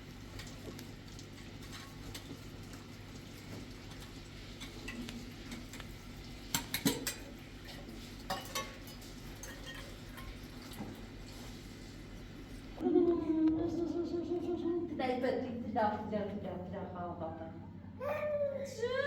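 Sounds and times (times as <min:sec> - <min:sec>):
steady low hum: 0:12.0 - 0:19.0.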